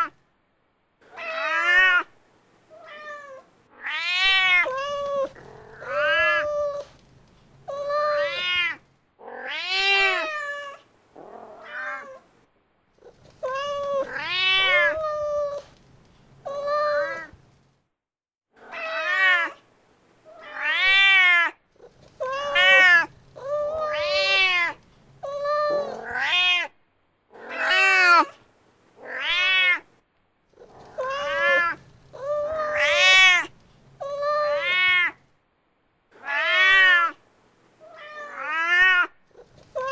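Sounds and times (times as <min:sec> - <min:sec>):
cat meowing: 0:01.1 - 0:02.1, 0:02.8 - 0:07.0, 0:07.7 - 0:12.2, 0:13.0 - 0:15.7, 0:16.4 - 0:17.4, 0:18.6 - 0:19.6, 0:20.3 - 0:26.8, 0:27.4 - 0:28.4, 0:29.0 - 0:29.9, 0:30.6 - 0:35.2, 0:36.2 - 0:37.2, 0:37.8 - 0:39.9.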